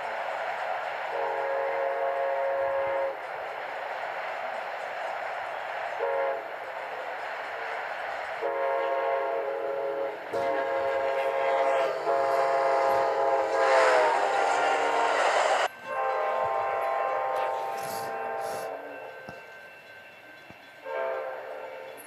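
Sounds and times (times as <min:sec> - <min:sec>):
locomotive air horn blasts: 0:00.0 - 0:03.2, 0:05.9 - 0:06.6, 0:08.4 - 0:19.0, 0:20.8 - 0:22.0.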